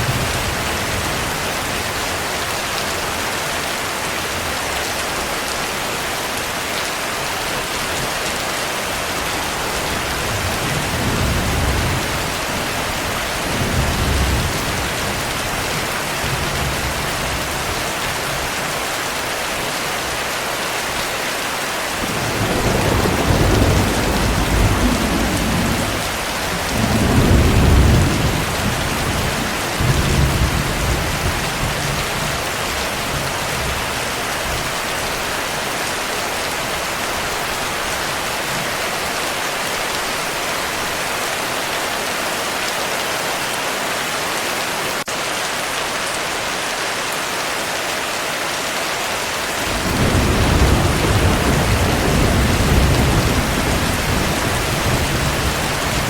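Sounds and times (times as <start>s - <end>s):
heavy rain: 0.0s - 56.0s
rolling thunder: 22.0s - 32.3s, 49.6s - 56.0s.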